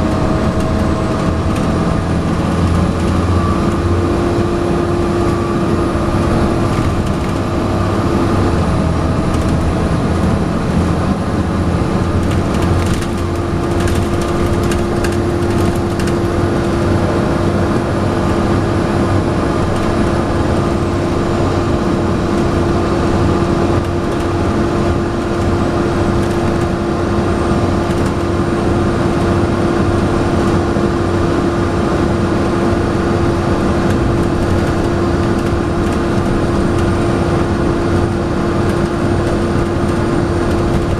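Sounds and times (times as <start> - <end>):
bus engine whining: 0.0 - 40.9
clicks and rattles: 9.2 - 9.8, 12.1 - 16.8, 38.6 - 40.9.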